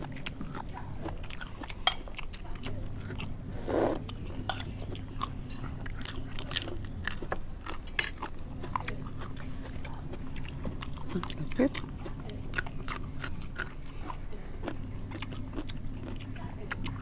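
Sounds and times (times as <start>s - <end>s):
crunchy bites and chewing: 0.0s - 17.0s
faint low hum: 0.0s - 17.0s
loud mouth sound: 3.1s - 4.0s.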